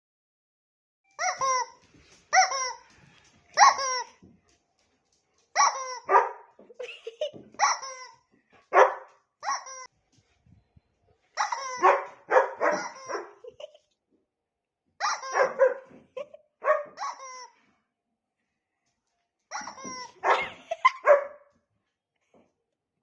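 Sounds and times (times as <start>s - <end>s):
dog barking: 6.0s - 6.5s, 8.7s - 9.2s, 11.8s - 13.4s, 15.2s - 16.0s, 16.6s - 17.0s, 20.2s - 21.5s.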